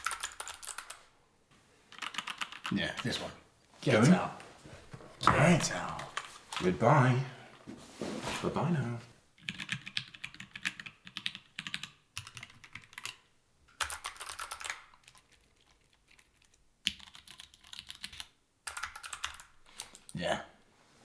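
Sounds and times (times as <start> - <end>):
mechanical keyboard typing: 0.0 - 1.0, 1.9 - 2.7, 9.4 - 19.9.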